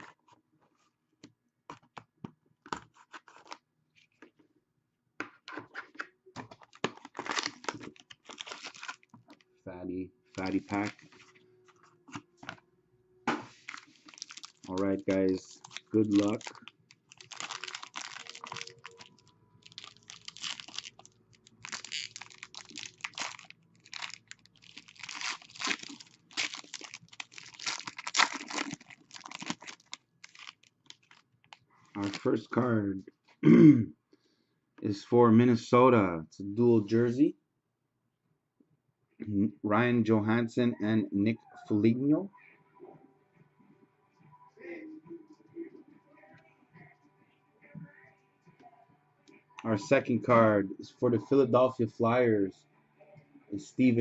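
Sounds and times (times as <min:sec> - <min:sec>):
box and wrapping being torn open: 0:06.7 - 0:09.1, 0:13.6 - 0:31.2.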